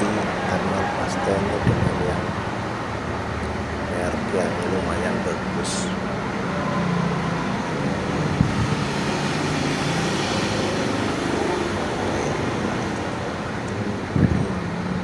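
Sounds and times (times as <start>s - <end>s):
faint low engine hum: 0.0s - 9.8s
road traffic noise: 0.0s - 15.0s.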